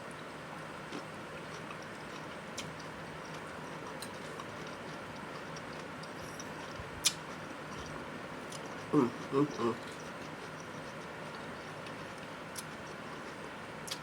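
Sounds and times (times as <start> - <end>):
chewing crunches: 0.9 - 14.0.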